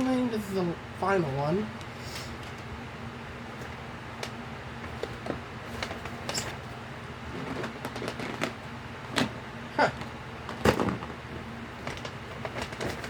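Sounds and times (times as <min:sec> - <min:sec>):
steady low hum: 0:00.0 - 0:13.0
package clicks and rustles: 0:03.6 - 0:06.7, 0:07.3 - 0:11.2, 0:11.8 - 0:13.0.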